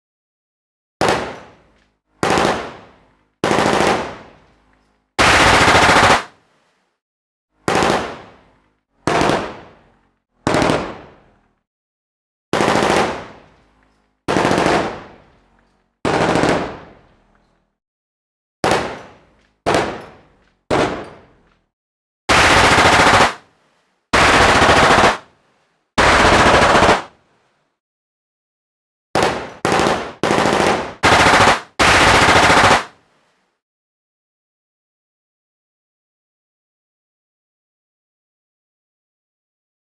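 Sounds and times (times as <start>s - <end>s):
machine gun bursts: 5.2s - 6.3s, 16.1s - 16.8s, 22.3s - 23.4s, 24.2s - 25.2s, 26.0s - 27.1s, 29.2s - 32.9s.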